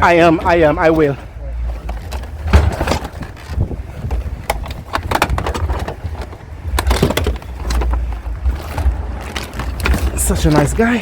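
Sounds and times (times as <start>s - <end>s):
wind rumble on microphone: 2.0s - 10.8s.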